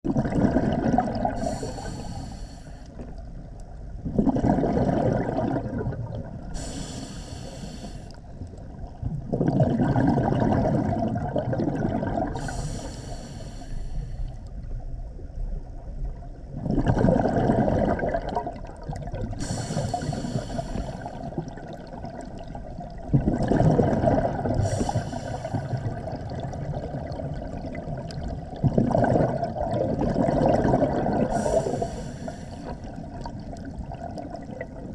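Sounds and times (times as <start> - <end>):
burble of exhaled bubbles: 0.0 - 2.3, 3.0 - 7.7, 8.3 - 13.4, 14.6 - 34.9
hissing regulator inhale: 1.3 - 3.0, 6.6 - 8.2, 12.4 - 14.5, 19.4 - 21.3, 24.5 - 25.9, 31.3 - 33.0.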